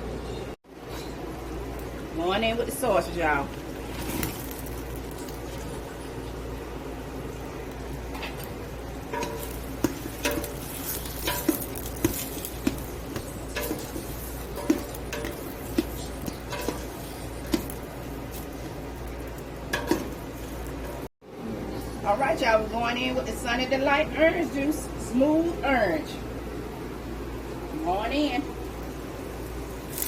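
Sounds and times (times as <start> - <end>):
food sizzling: 1.2 - 21.1, 28.6 - 30.0
spoon clinking against pot: 9.1 - 17.8.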